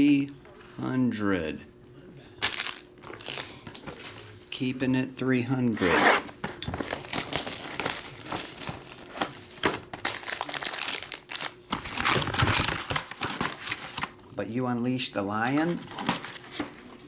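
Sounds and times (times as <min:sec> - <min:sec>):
card pack wrapper crinkling: 0:02.4 - 0:03.9, 0:06.8 - 0:14.2.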